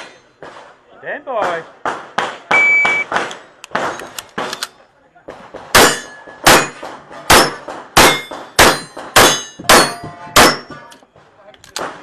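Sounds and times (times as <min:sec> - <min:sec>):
pistol shots: 0:05.6 - 0:10.8
steel targets ringing: 0:07.4 - 0:10.9.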